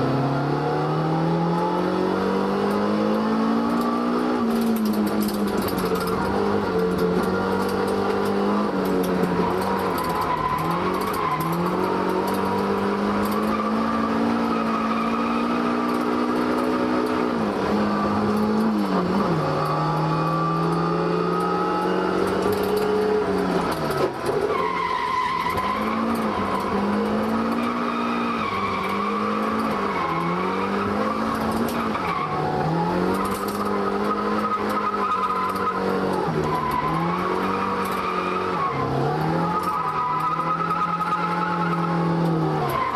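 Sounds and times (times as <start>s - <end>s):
car engine revving high: 0.0s - 24.5s.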